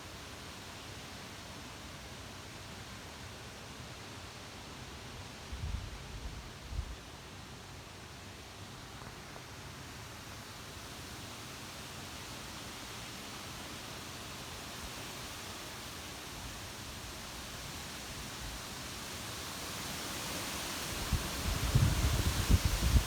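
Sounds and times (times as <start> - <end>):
storm wind rushing through trees: 16.2 - 23.0.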